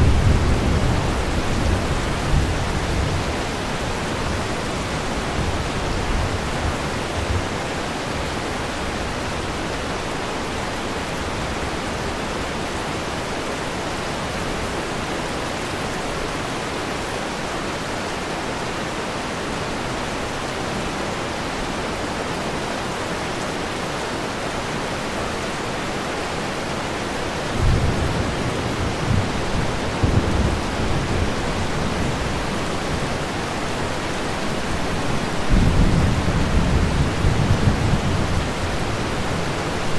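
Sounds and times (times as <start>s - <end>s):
low rumbles of thunder: 0.0s - 6.8s, 34.9s - 39.6s
steady rain hiss: 0.0s - 39.9s.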